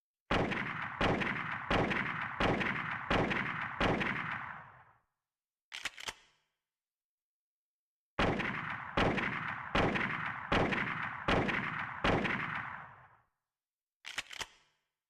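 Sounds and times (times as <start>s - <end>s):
rifle shots echoing: 0.3s - 4.8s, 8.2s - 13.1s
clatter of clicks: 5.7s - 6.3s, 14.0s - 14.7s.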